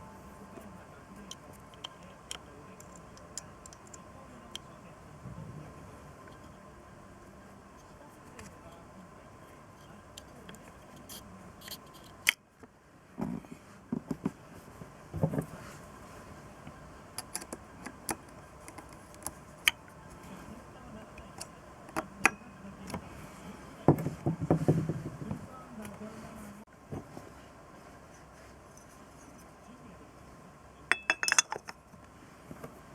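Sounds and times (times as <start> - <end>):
metal tools clicking and clinking: 30.9 - 31.8.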